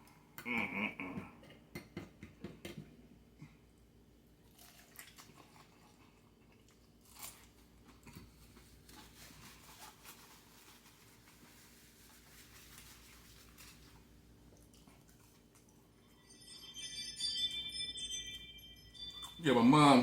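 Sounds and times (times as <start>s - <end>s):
man chewing food: 4.4s - 10.4s, 13.7s - 15.9s.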